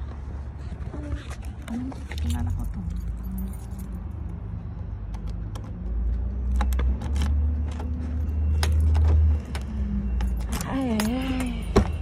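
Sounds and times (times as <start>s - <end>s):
car engine low rumble: 0.0s - 12.0s.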